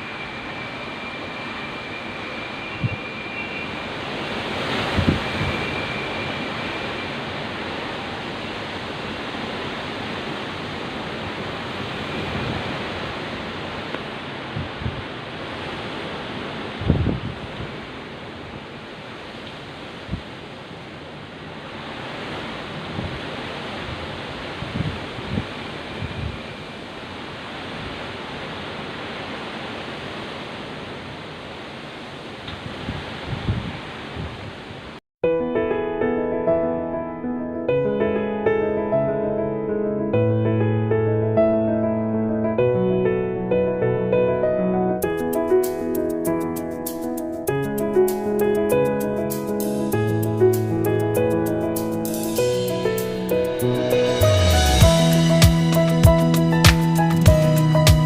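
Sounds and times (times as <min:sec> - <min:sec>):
heavy rain in wind: 0:00.0 - 0:35.0, 0:43.1 - 0:58.0.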